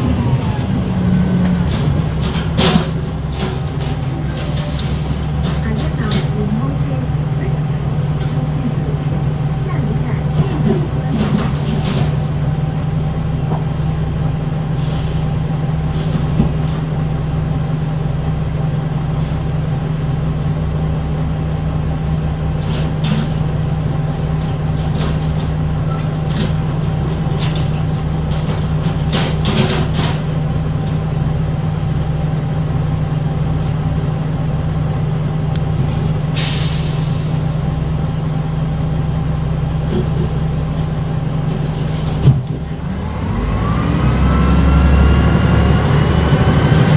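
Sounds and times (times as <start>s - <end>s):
rattles and squeaks: 0.0s - 12.6s, 13.4s - 14.6s, 24.4s - 31.0s
bus engine droning: 0.0s - 46.9s
air release hiss: 36.4s - 37.8s.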